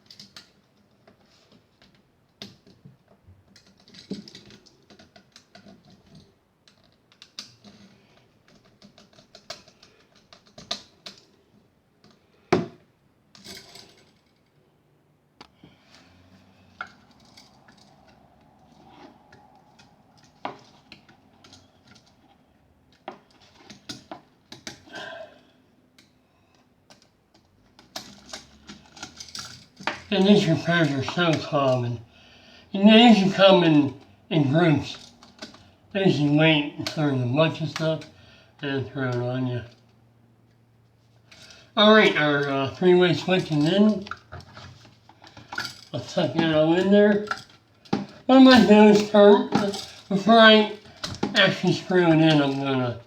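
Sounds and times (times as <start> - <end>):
hand tools clicking and scraping: 3.5 - 11.4, 26.9 - 32.0, 41.3 - 53.0.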